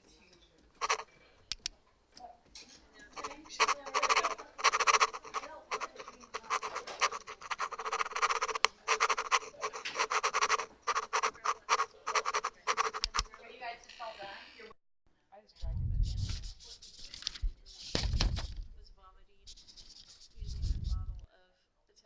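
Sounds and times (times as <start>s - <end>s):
sunglasses arm scratching on table: 0.8s - 1.1s, 3.1s - 13.4s.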